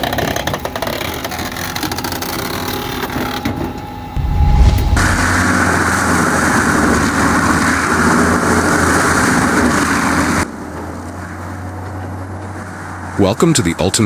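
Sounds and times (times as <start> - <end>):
engine hum: 4.2 - 5.6.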